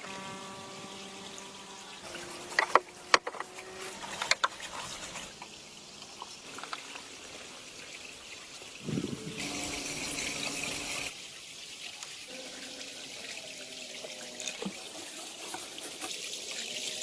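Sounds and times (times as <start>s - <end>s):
water trickling and splashing: 0.0s - 17.0s.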